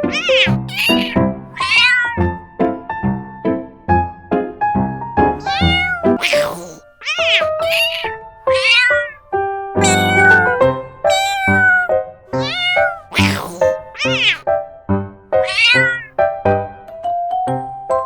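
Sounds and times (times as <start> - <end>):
cat meowing: 0.0 - 2.4, 5.4 - 9.2, 9.8 - 14.4, 15.4 - 16.1.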